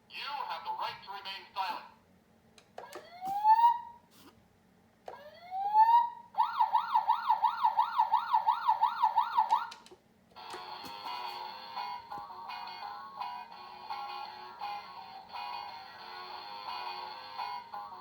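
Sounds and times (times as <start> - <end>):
toy police car siren: 2.8 - 4.0, 5.1 - 9.8.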